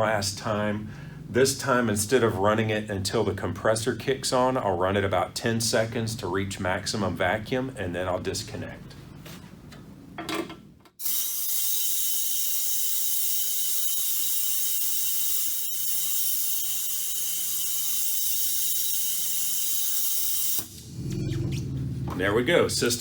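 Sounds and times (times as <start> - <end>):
air vacuum pump hissing: 11.0 - 21.0.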